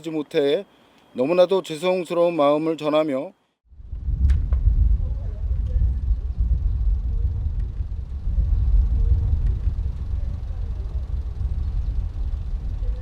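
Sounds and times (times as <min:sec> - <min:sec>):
low outdoor rumble: 0:03.7 - 0:13.0.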